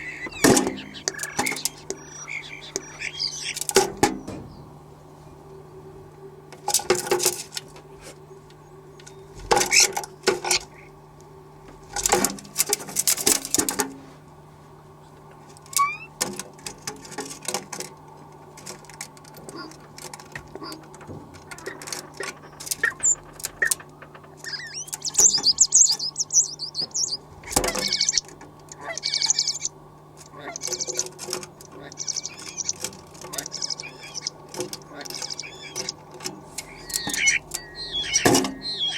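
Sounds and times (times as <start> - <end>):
birds scratching and fluttering: 0.0 - 4.5, 6.5 - 38.9
birds chirping: 0.0 - 13.8, 14.7 - 38.9
steady low hum: 0.0 - 38.9.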